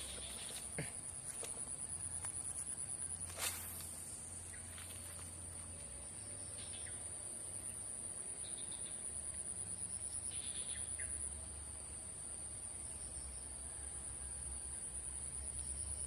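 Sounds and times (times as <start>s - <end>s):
insects trilling: 0.0s - 16.0s.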